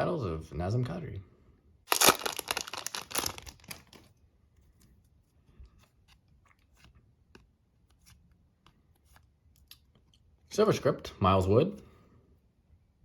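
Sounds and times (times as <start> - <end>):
soft crackle: 1.9 - 7.0.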